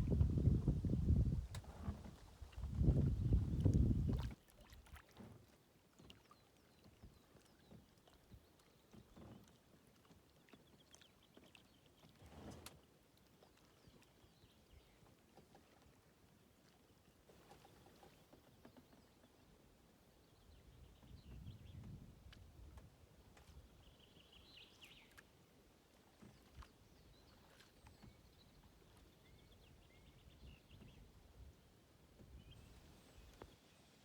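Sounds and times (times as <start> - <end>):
kayak paddle splashes: 2.0 - 6.4.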